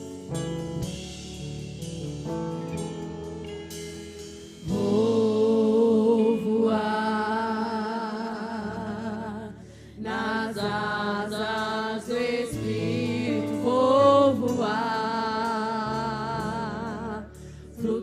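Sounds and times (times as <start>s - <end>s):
women singing a hymn: 4.6s - 18.0s.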